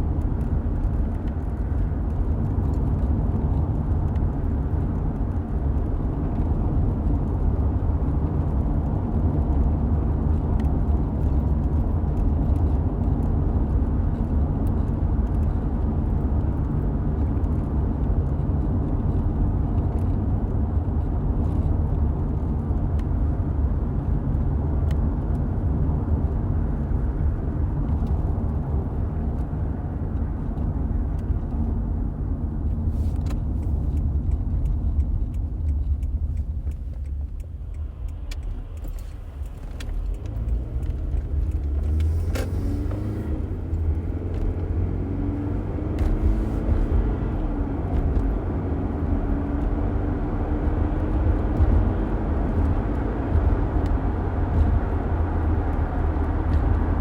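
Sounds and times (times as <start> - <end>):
car road noise rumble: 0.0 - 57.0
light ticks: 32.7 - 43.0.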